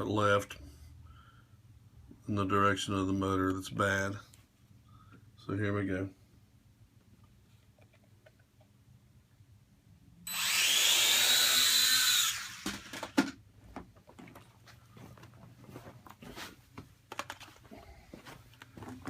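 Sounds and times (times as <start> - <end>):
quadcopter motors whining: 10.3 - 13.1.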